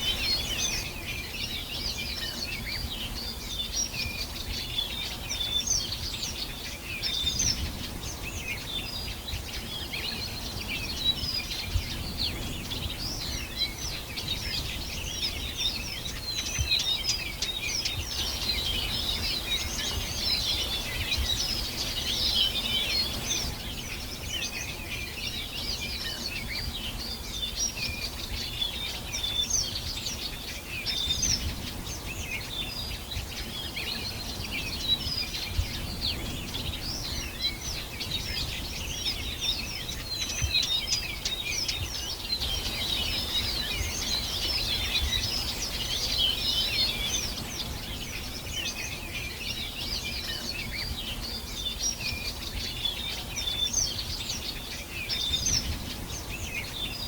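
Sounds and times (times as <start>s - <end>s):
songbirds chirping and trilling: 0.0s - 57.0s.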